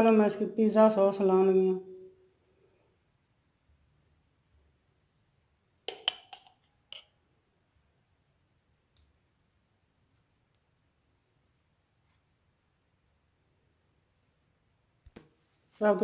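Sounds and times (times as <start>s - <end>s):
container clicks and knocks: 5.9s - 7.0s.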